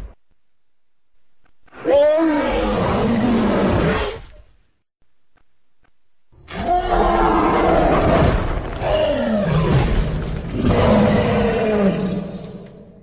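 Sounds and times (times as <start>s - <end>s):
loud rough roaring calls: 1.8s - 4.2s, 6.5s - 13.0s.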